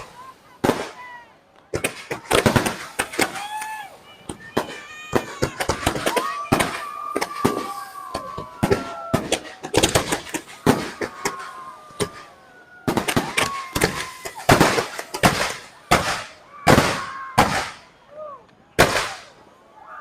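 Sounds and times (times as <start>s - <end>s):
fireworks bangs: 0.0s - 17.9s, 18.8s - 19.4s.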